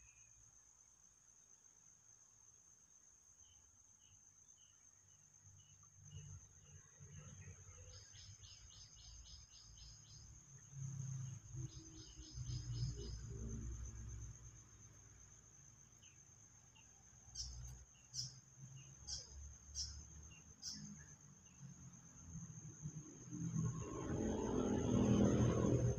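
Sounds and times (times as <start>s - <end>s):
insect chirps: 0.0s - 25.9s
insect drone: 0.0s - 25.9s.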